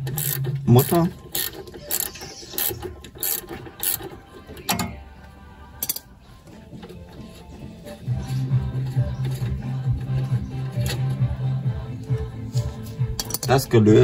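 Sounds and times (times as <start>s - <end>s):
ratchet wrench clicking: 0.0s - 4.1s, 5.8s - 6.1s.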